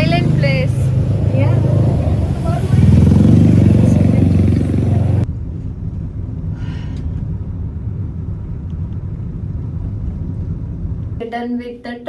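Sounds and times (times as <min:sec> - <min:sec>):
loud full noise: 0:00.0 - 0:05.2
car cabin rumble: 0:00.0 - 0:11.3.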